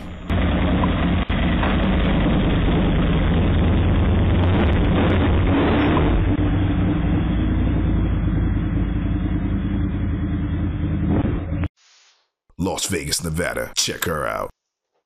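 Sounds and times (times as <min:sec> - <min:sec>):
rushing noise: 0:00.0 - 0:11.6
vehicle engine running loudly: 0:00.0 - 0:11.7.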